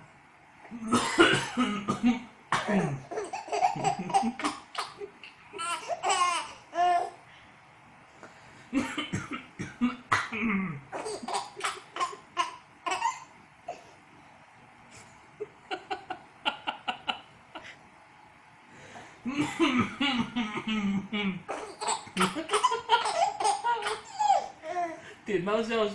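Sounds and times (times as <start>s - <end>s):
man coughing: 0.8s - 4.9s, 19.3s - 21.4s, 22.2s - 24.1s
baby giggling and laughing: 2.9s - 7.2s, 10.9s - 13.9s, 21.5s - 25.0s.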